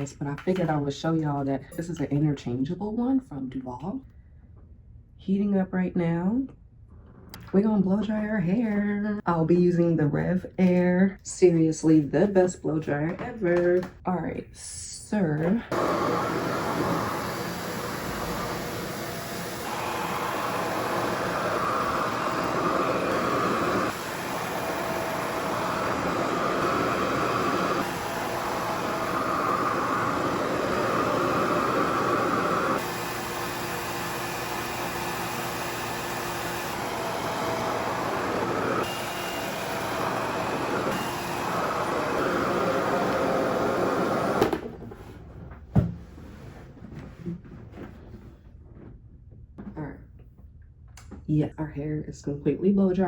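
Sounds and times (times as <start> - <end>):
hair dryer whirring: 15.7 - 44.8.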